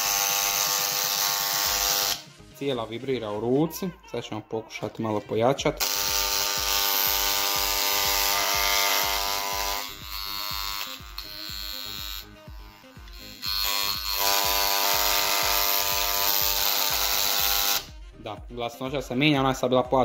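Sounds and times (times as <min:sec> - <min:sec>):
engraving pen buzzing: 0:00.0 - 0:02.3, 0:05.8 - 0:18.0.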